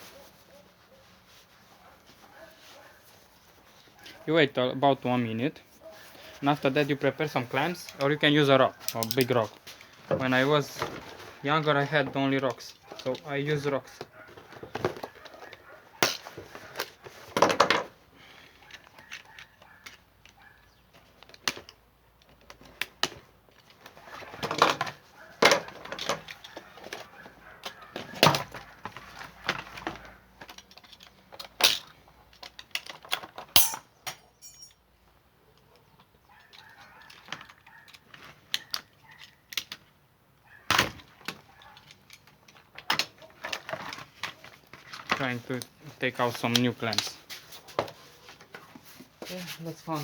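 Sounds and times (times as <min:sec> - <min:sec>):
hand tools clicking and clattering: 0:07.4 - 0:11.2, 0:11.8 - 0:34.9, 0:40.8 - 0:48.9.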